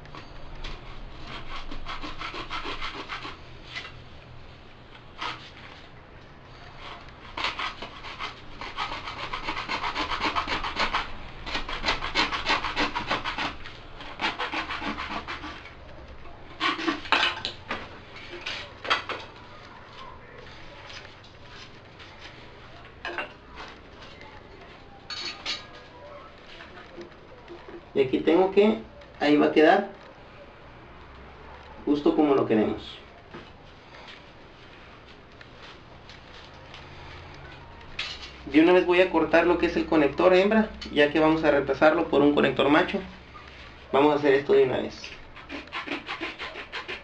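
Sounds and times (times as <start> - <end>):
hand saw cutting plastic pipe: 0.7 - 3.4, 7.3 - 15.8, 16.6 - 17.8, 45.3 - 47.0.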